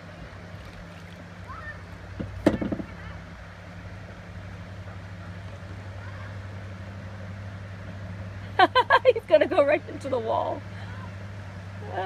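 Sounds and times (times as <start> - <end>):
steady low hum: 0.0 - 12.0
run of smaller knocks: 2.2 - 3.0.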